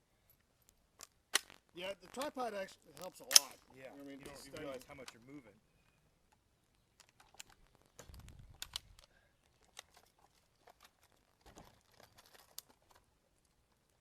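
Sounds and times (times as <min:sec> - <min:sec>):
rustling: 0:00.2 - 0:14.0
faint clicks: 0:00.3 - 0:11.2.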